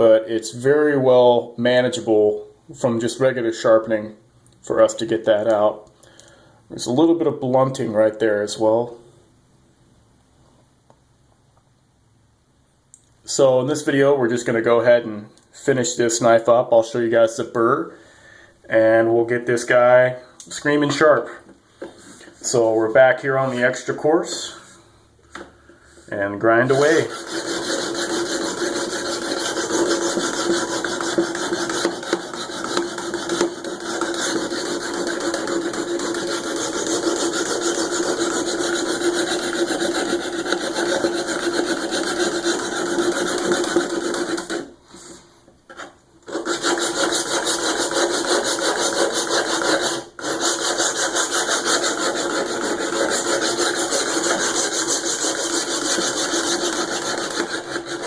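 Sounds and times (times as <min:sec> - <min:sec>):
knife blade rasping on sharpener: 0:26.8 - 0:44.7.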